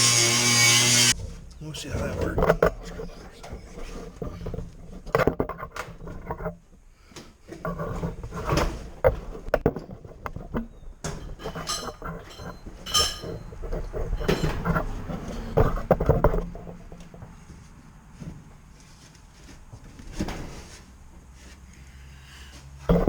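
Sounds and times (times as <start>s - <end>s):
metal tools clanking: 11.1s - 15.6s.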